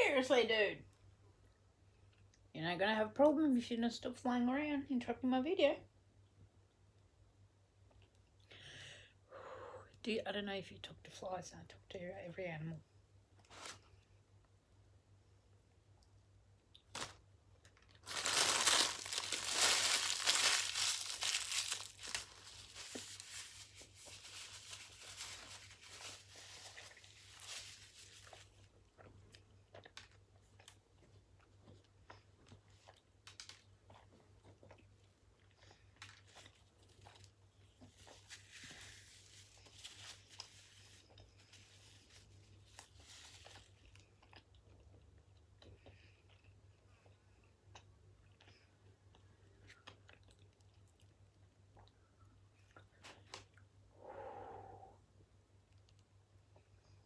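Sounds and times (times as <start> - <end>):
paper wrapper crinkling and tearing: 16.8 - 28.7, 38.0 - 43.8
eating clicks and rustles: 17.7 - 30.8.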